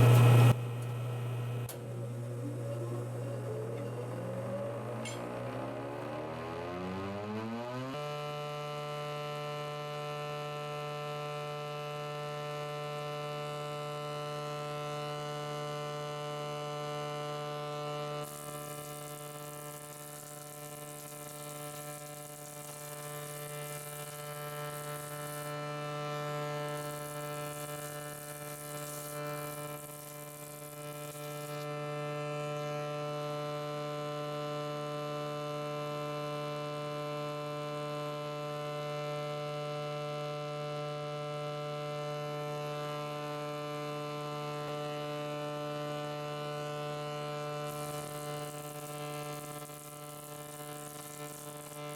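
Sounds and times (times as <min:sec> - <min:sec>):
high hissing wood cutting: 0:00.0 - 0:06.3, 0:18.3 - 0:31.7
jointer running with hum: 0:00.0 - 0:08.8, 0:17.5 - 0:33.0, 0:42.5 - 0:51.9.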